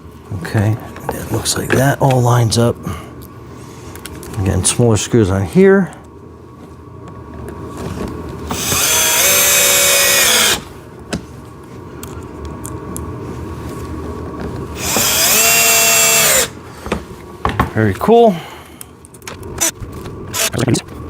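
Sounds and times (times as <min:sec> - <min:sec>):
power drill driving screws: 0:08.5 - 0:10.7, 0:14.8 - 0:16.6, 0:19.6 - 0:20.6.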